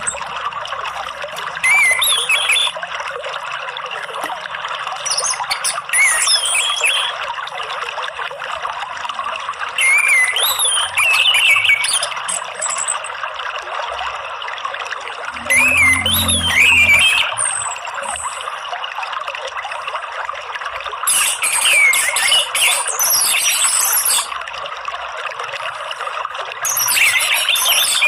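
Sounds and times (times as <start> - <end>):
running water trickling: 0.0 - 28.0
thrush singing: 15.4 - 18.2.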